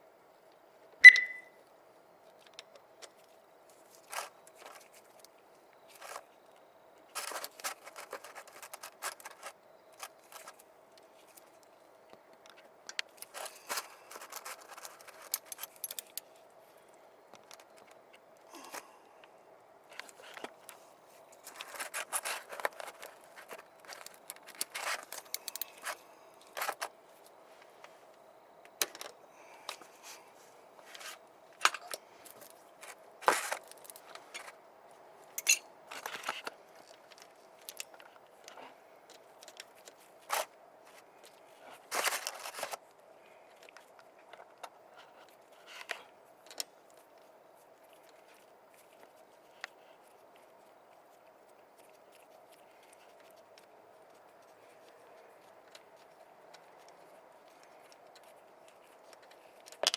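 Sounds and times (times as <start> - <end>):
faint steady hum: 0.0 - 59.9
metal tools clinking and rattling: 35.4 - 36.4.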